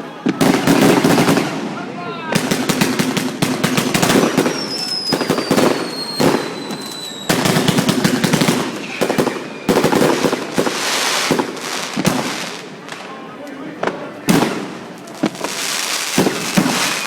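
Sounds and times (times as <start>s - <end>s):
firecrackers crackling: 0.0s - 17.0s
whistling firework: 2.4s - 11.6s, 14.4s - 17.0s.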